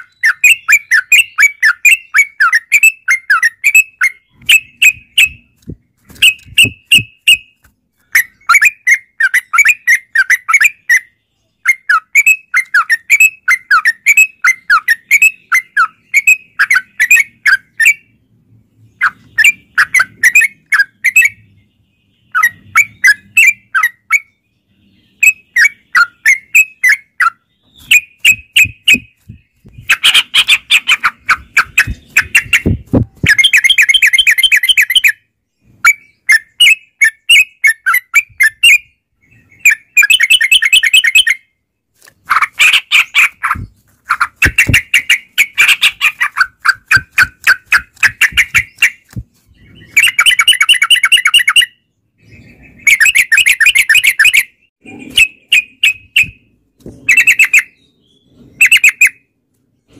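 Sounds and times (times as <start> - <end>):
bulbul chattering whistled notes: 0.0 - 5.6, 6.2 - 18.1, 25.2 - 35.2, 42.4 - 51.7, 52.3 - 56.5.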